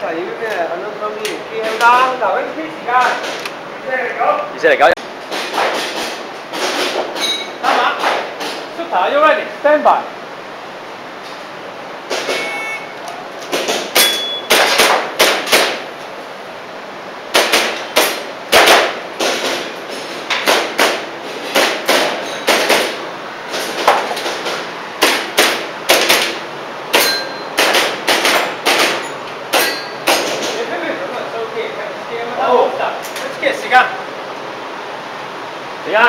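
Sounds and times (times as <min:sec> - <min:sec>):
pellets clanging on steel targets: 0:14.0 - 0:14.5, 0:22.2 - 0:22.6, 0:26.9 - 0:27.6, 0:28.4 - 0:30.1
airsoft pistol firing: 0:17.3 - 0:19.4.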